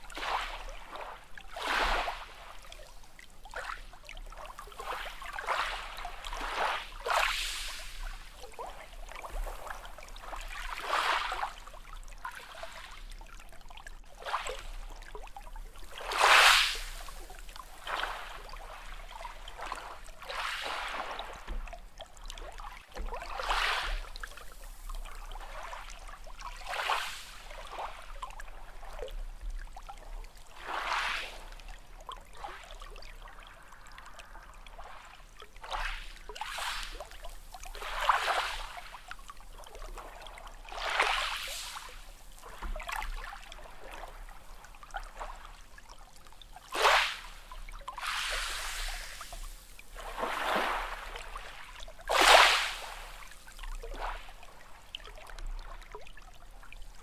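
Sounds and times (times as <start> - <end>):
small sea waves splashing: 0.0 - 57.0
water trickling: 31.6 - 38.0.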